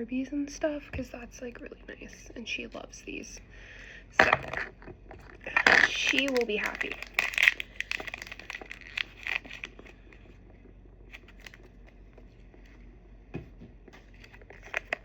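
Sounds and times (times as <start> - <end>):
plastic wrapper crinkling: 4.2 - 10.2, 11.1 - 12.4, 14.0 - 15.0.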